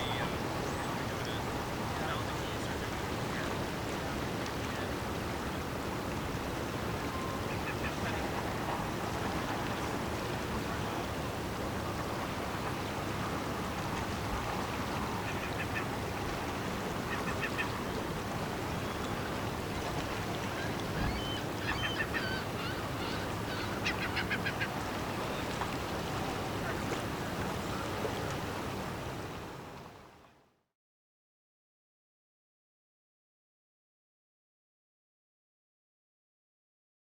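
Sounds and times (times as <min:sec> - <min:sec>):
waterbirds quacking: 0:00.0 - 0:03.5, 0:07.1 - 0:11.1, 0:15.0 - 0:16.4, 0:17.0 - 0:18.0, 0:18.8 - 0:28.3.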